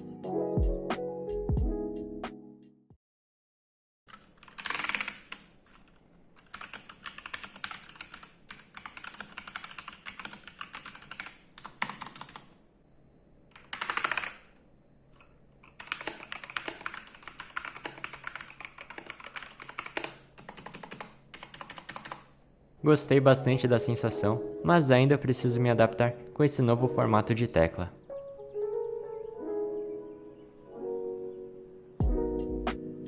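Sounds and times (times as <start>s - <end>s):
mechanical keyboard typing: 4.1s - 12.6s, 13.5s - 14.5s, 15.6s - 22.3s.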